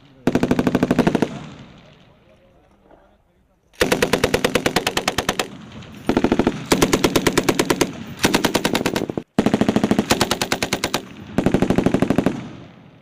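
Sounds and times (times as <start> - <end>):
machine gun bursts: 3.8 - 12.4.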